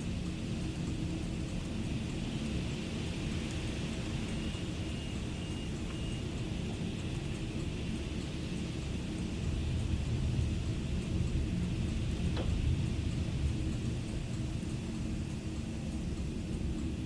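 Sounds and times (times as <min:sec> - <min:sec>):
thunder rumbling: 0:09.3 - 0:17.0.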